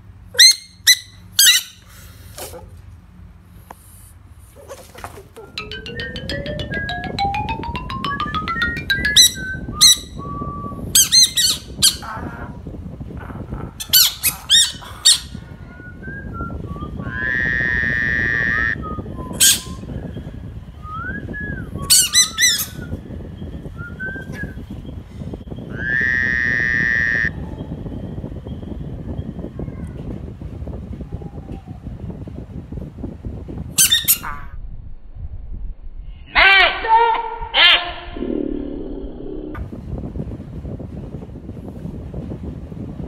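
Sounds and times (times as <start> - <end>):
frog squawks and buzzy croaks: 25.8 - 27.4.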